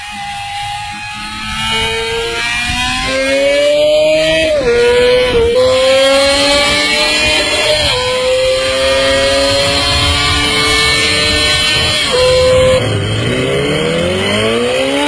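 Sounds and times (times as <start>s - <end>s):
motorcycle engine at high revs: 0.0s - 15.0s.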